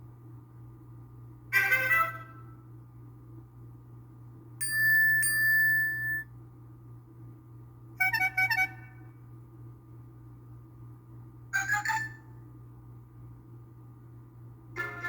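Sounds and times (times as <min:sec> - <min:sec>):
bell-like chime: 0:04.6 - 0:06.2.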